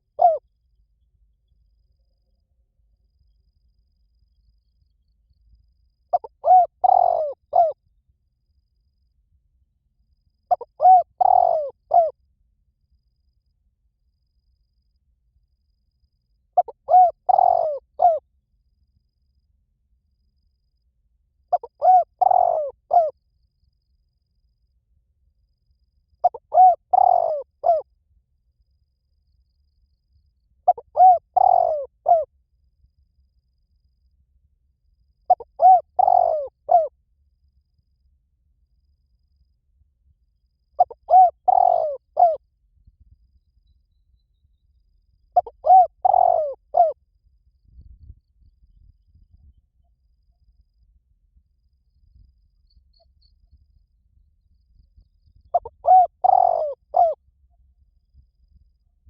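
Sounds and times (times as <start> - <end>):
dove cooing: 0.0 - 0.4, 6.1 - 7.8, 10.5 - 12.1, 16.6 - 18.2, 21.5 - 23.1, 26.2 - 27.8, 30.7 - 32.3, 35.3 - 36.9, 40.8 - 42.4, 45.4 - 47.0, 55.5 - 57.2.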